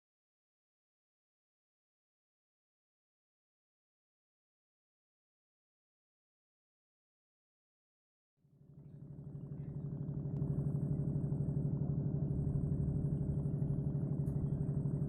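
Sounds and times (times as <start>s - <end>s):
boat engine running: 8.6s - 15.0s.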